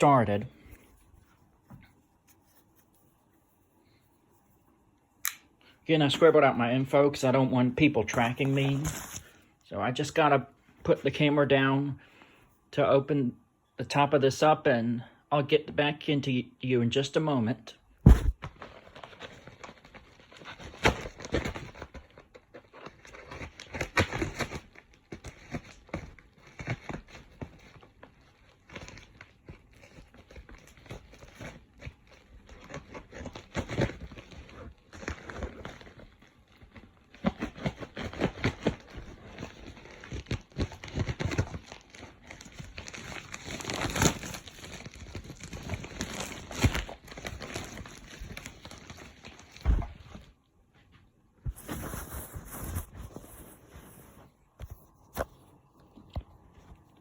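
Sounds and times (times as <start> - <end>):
packaging crinkling and rustling: 7.6 - 9.6, 18.1 - 50.4, 51.5 - 57.0
cardboard box knocks: 18.1 - 18.4.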